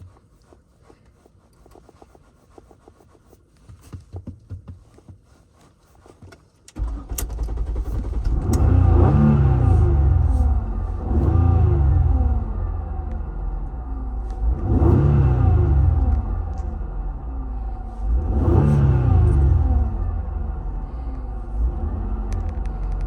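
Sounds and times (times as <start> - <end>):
car engine cranking on starter: 6.7 - 23.0
car engine running and revving: 6.8 - 23.0.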